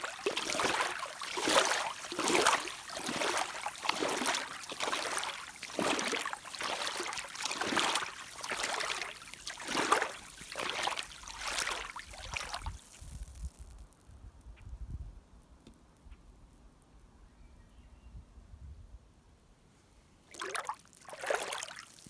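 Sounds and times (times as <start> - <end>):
water splashing around boots: 0.0 - 13.0, 20.3 - 22.0.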